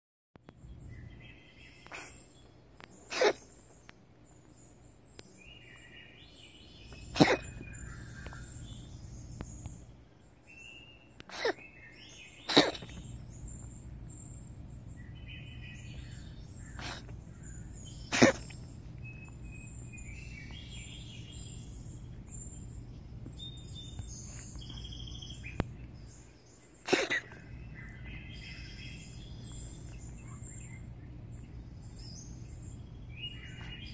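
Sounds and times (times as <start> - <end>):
birds chirping: 0.4 - 33.9
cat coughing: 1.9 - 2.2, 3.1 - 3.4, 7.0 - 7.7, 11.3 - 11.8, 12.4 - 13.0, 16.7 - 17.2, 18.1 - 18.6, 26.8 - 27.6.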